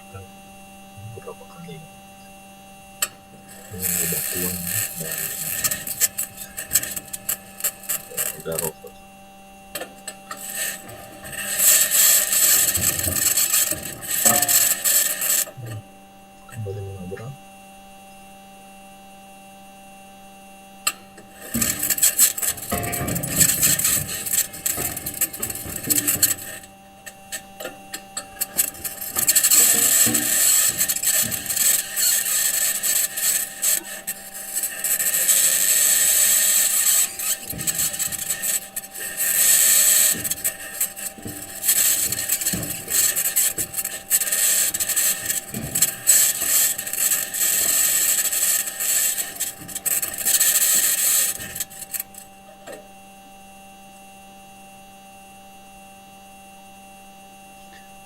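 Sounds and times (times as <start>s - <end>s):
electrical hum: 0.0s - 58.0s
wheels scraping over rock: 3.0s - 9.0s, 9.8s - 15.8s, 20.9s - 52.7s.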